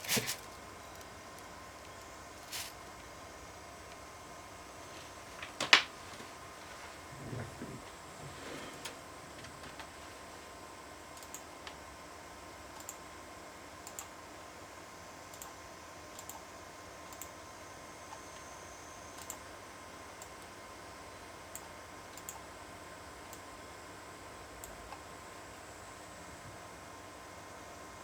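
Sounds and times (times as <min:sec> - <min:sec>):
steady background hiss: 0:00.0 - 0:28.0.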